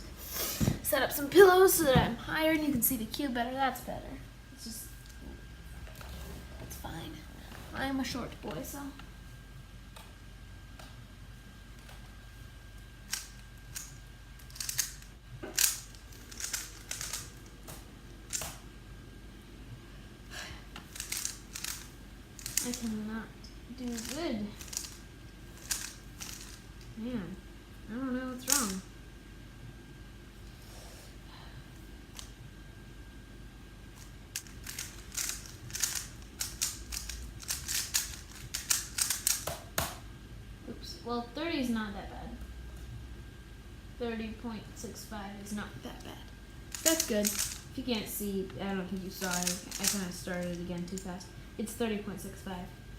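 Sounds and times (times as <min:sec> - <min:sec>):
puzzle cube layers clicking: 0:34.4 - 0:39.4, 0:46.8 - 0:47.6, 0:49.3 - 0:50.5.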